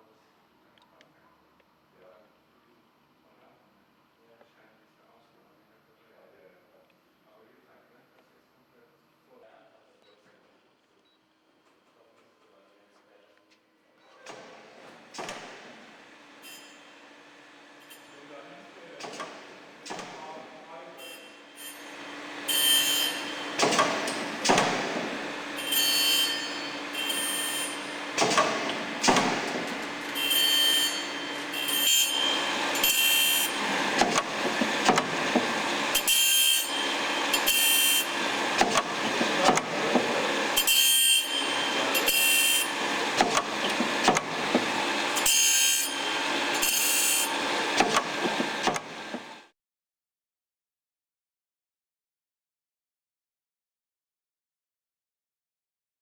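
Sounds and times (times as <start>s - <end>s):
machine hum: 14.7s - 49.4s
grinding wheel hissing bursts: 21.8s - 30.3s, 31.0s - 49.4s.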